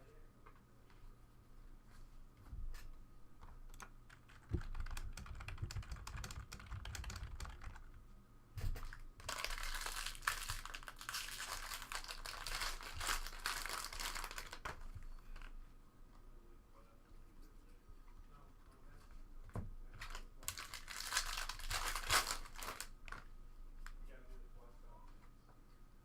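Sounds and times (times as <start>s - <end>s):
cards and wrapper rustling: 8.8s - 14.8s, 20.0s - 23.2s.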